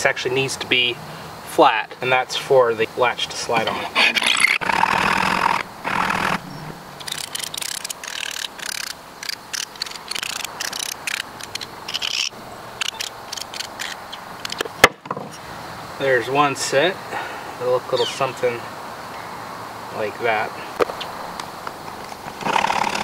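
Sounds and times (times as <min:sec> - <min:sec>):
sharp metallic click: 0:07.0 - 0:15.0.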